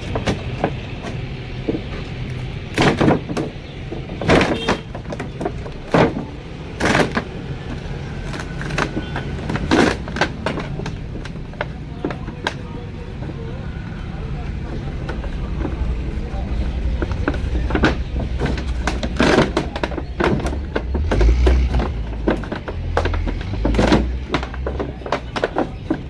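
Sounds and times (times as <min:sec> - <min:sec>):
strong knocks: 0:00.0 - 0:12.6, 0:14.5 - 0:26.0.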